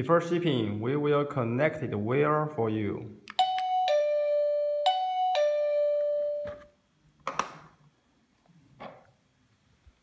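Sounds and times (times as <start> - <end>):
doorbell ding-dong chime: 3.4 - 6.6.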